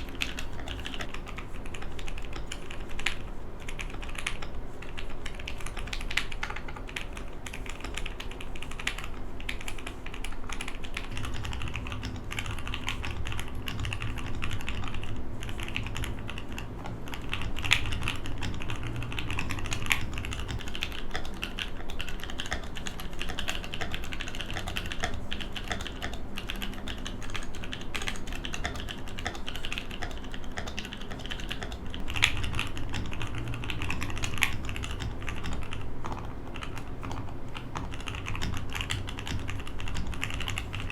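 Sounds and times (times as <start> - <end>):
mechanical keyboard typing: 0.0 - 40.9.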